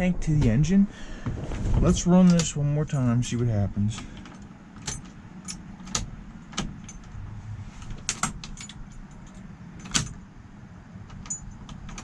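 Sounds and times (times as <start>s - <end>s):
faint low hum: 0.0s - 12.0s
ignition key and keyring jingling: 1.8s - 10.4s, 11.0s - 12.0s.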